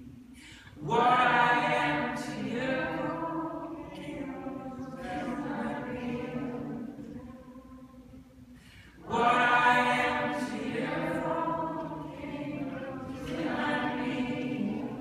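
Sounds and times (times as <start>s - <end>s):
crowd singing along: 0.8s - 8.1s, 9.0s - 15.0s.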